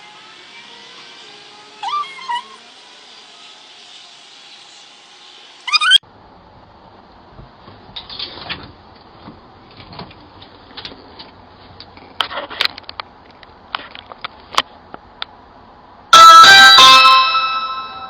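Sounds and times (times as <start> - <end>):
ringing chime tones: 16.2 - 18.0.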